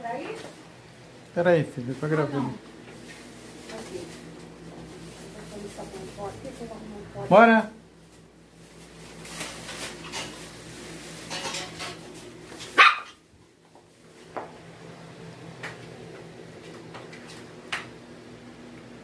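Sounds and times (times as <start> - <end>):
dog barking: 12.7 - 13.2.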